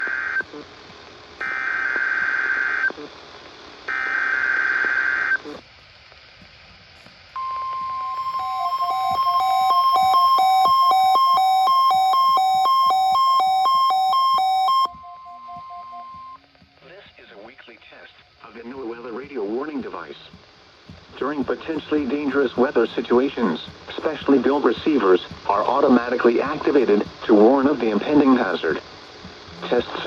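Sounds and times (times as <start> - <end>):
buzzing data bursts: 7.4 - 16.4
electronic alert tone with pulsing beep: 7.4 - 16.4.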